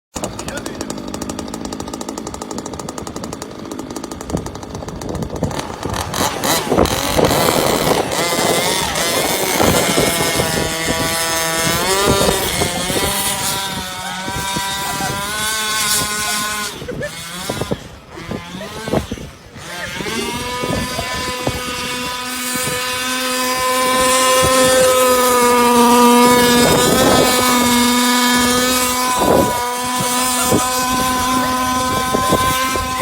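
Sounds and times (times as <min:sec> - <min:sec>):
toy car motor whining: 0:00.3 - 0:33.0.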